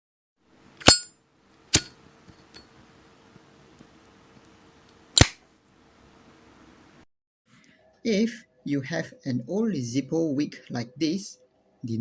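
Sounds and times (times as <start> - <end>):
lighter metallic clicks: 1.7 - 1.9, 5.2 - 5.4.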